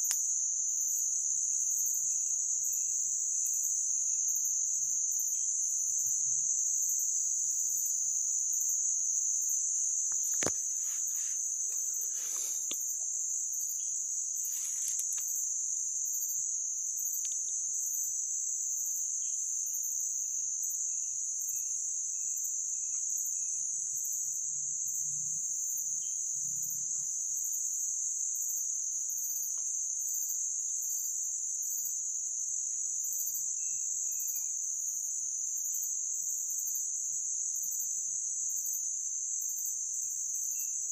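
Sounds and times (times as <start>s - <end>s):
insect chorus: 0.0s - 40.9s
rustling: 10.2s - 13.1s, 14.4s - 15.3s.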